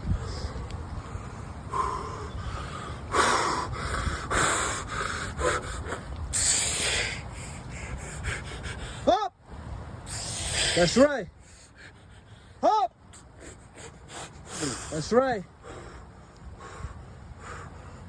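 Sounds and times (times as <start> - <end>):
person breathing hard: 1.2 - 9.1, 15.6 - 18.0.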